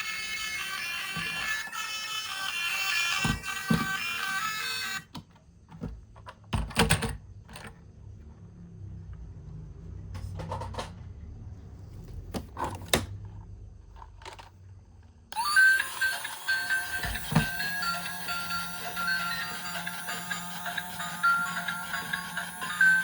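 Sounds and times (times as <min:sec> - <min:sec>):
plastic toy vehicles clicking: 0:14.0 - 0:14.7.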